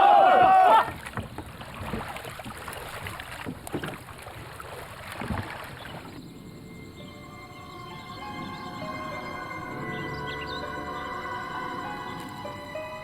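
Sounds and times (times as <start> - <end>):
water lapping: 0.0 - 13.0
soft paddle strokes: 0.3 - 6.2.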